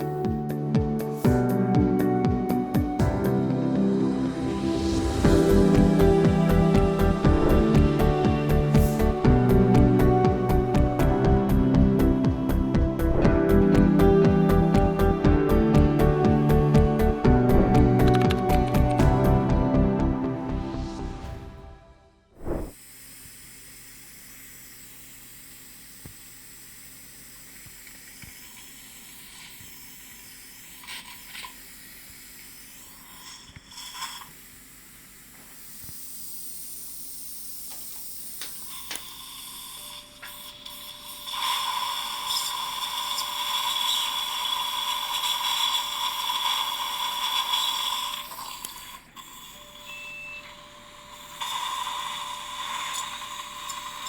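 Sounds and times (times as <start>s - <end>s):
surgical drill whine: 1.2s - 24.3s
water spray hiss: 22.4s - 49.8s, 51.2s - 54.0s.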